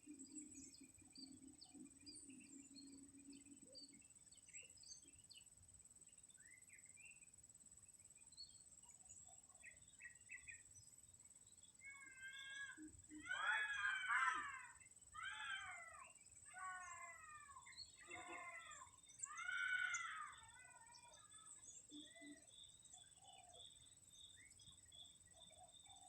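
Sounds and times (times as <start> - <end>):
small birds chirping: 0.0 - 26.0
drawn-out bird call: 11.8 - 22.4.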